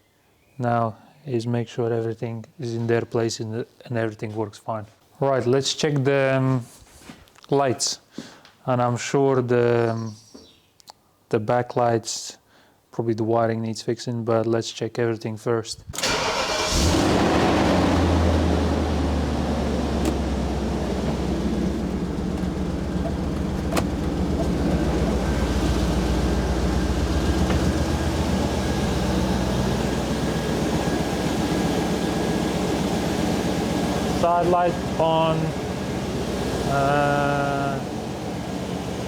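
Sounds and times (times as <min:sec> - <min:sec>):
car engine starting and idling: 0:16.0 - 0:39.0.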